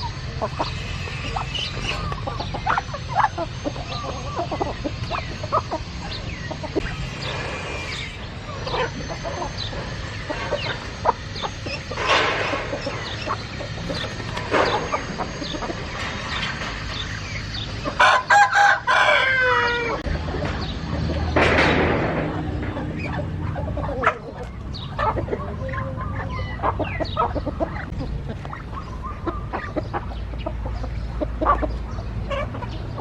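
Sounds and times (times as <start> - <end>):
chickens clucking: 0.0 - 33.0
rooster crowing: 17.9 - 20.1.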